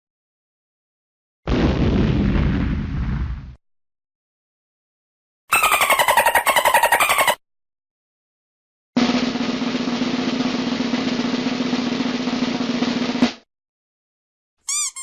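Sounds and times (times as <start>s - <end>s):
warbling chirp: 5.5s - 7.4s
snare drum roll: 9.0s - 13.4s.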